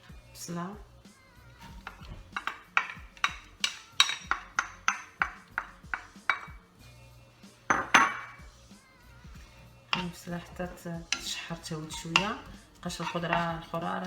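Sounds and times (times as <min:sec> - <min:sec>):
metal spoon clinking on pan: 0:01.6 - 0:06.6, 0:07.7 - 0:08.4, 0:09.9 - 0:10.5, 0:11.1 - 0:13.8
spoon scraping pan: 0:01.6 - 0:06.6, 0:09.2 - 0:14.0.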